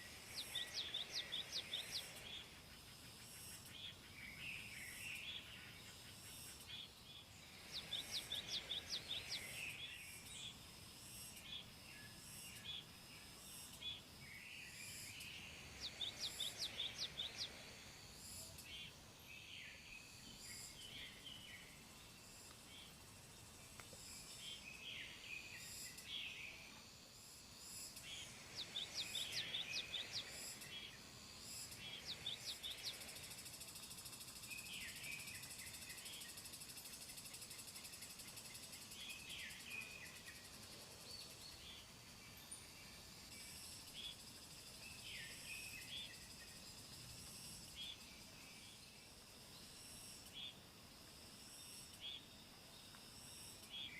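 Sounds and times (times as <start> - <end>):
small birds chirping: 0.0 - 50.7, 51.6 - 53.9
high insect drone: 0.0 - 53.9.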